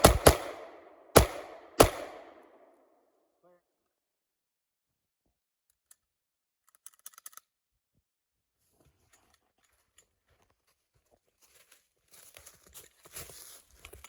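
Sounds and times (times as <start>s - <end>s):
plastic parts clicking and rattling: 5.7s - 7.5s
soft crackling rustle: 8.6s - 14.0s.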